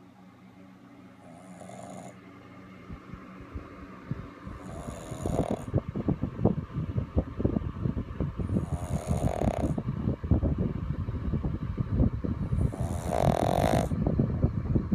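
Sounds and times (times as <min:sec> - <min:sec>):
dog snoring: 0:01.2 - 0:02.2, 0:04.6 - 0:05.8, 0:08.4 - 0:09.8, 0:12.5 - 0:14.0.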